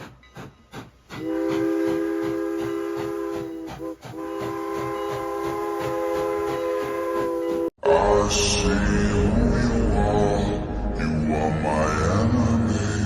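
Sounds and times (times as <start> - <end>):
train wheels clicking on rails: 0.0 - 7.7
locomotive air horn: 1.2 - 7.7.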